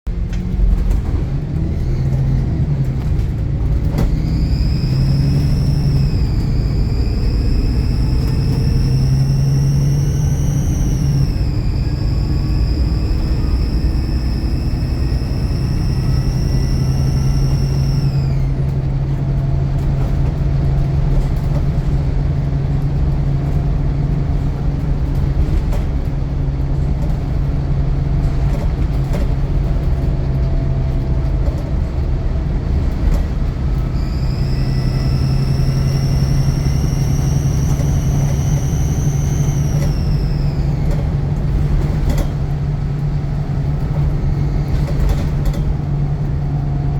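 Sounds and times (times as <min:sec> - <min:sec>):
diesel bus engine drone: 0:00.0 - 0:46.9
turbocharger whistle: 0:04.0 - 0:18.7, 0:33.8 - 0:42.3.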